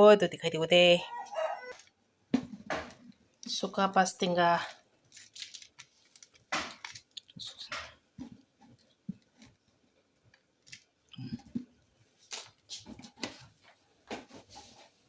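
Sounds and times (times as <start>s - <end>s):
food preparation taps and crunches: 6.2s - 9.6s.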